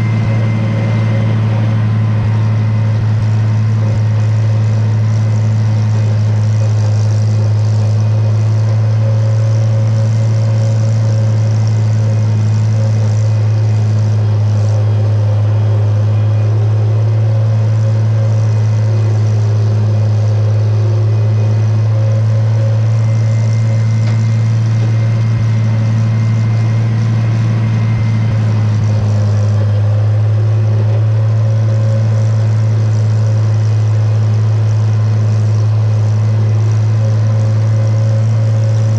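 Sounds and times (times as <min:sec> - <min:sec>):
tractor engine running: 0:00.0 - 0:38.9.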